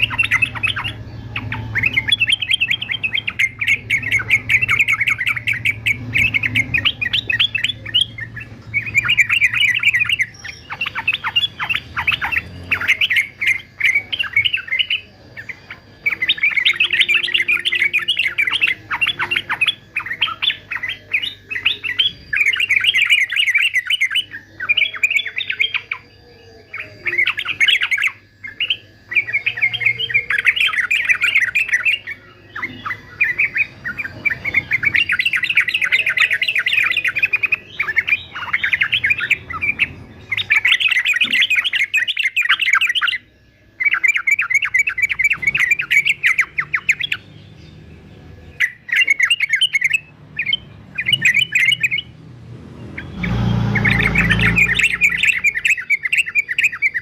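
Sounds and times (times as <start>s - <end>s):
bulbul chattering song: 0.0s - 57.0s
faint steady hum: 0.0s - 57.0s.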